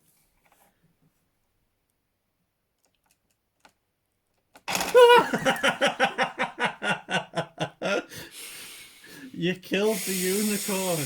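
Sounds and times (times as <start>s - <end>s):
people laughing: 5.0s - 8.2s.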